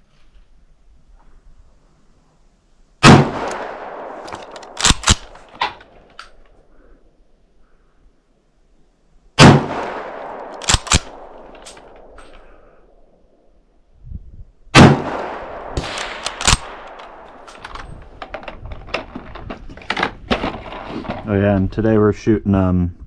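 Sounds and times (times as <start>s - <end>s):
rifle shots with echo: 3.0s - 5.5s, 9.4s - 13.2s, 14.7s - 17.6s
rifle bolt metallic clacks: 3.4s - 6.6s, 9.9s - 12.5s, 15.8s - 20.4s.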